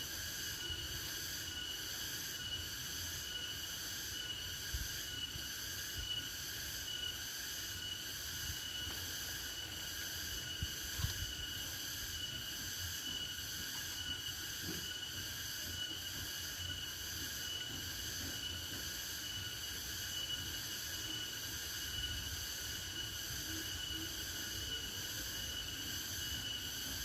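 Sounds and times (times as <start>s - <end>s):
insects chirring: 0.0s - 27.0s.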